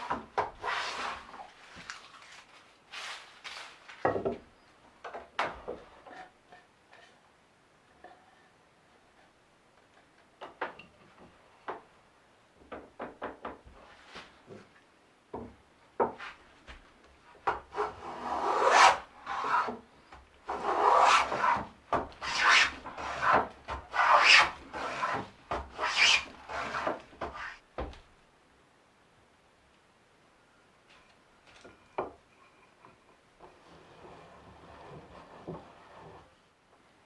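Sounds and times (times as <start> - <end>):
rasp filing wood: 0.0 - 1.4, 17.7 - 19.8, 20.5 - 27.6.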